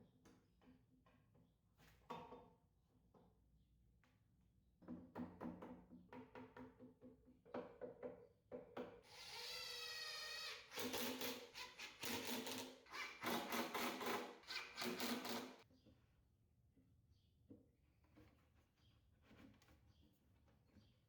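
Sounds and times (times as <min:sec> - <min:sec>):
power tool whine: 0:09.1 - 0:11.3.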